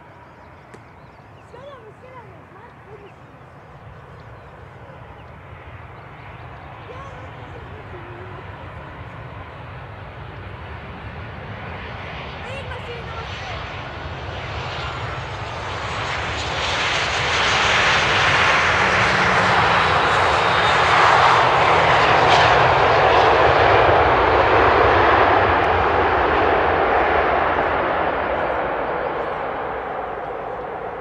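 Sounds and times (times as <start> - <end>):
aircraft engines flying past: 0.0 - 31.0.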